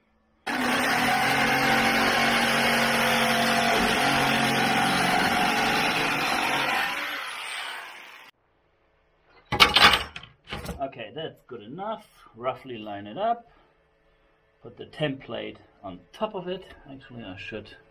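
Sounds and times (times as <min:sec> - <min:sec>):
power saw cutting wood: 0:00.5 - 0:08.3.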